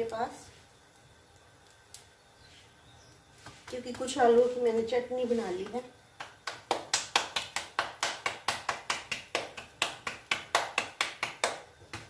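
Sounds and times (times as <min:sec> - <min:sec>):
hands slapping dough: 0:06.2 - 0:12.0.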